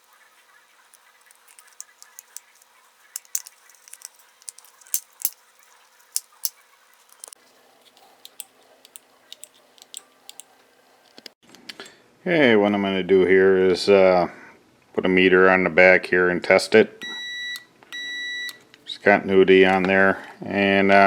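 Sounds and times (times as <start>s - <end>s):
plastic parts clicking: 0.9s - 5.4s, 6.1s - 11.3s.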